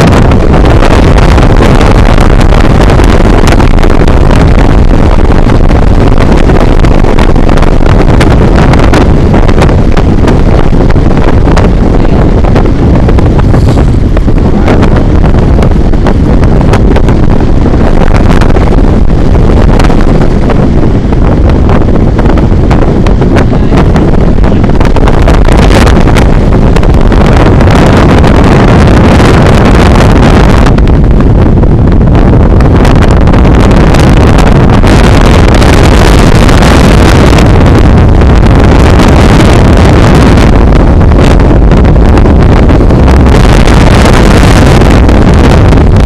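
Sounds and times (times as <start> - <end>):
strong wind buffeting microphone: 0.0 - 46.0.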